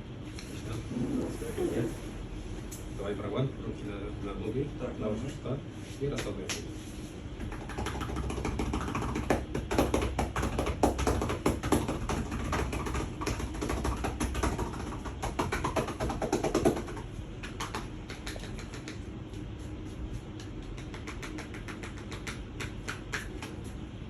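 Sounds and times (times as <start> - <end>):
hands slapping a person's back: 6.1 - 6.7, 15.3 - 19.5, 20.3 - 23.8.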